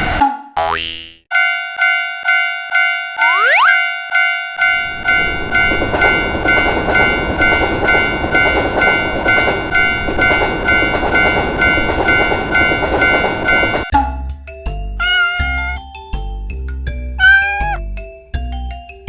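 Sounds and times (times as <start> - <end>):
railroad crossing warning bell: 1.3 - 13.9
train rumbling and wheels clattering: 4.8 - 14.0.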